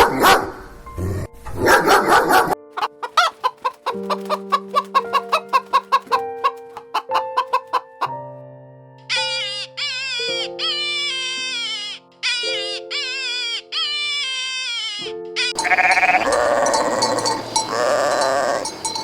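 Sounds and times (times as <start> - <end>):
chicken clucking: 2.1 - 8.2.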